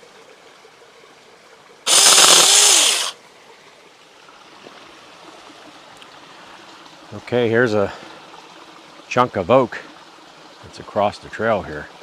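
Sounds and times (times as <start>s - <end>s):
electric chainsaw motor whine: 1.9s - 3.2s.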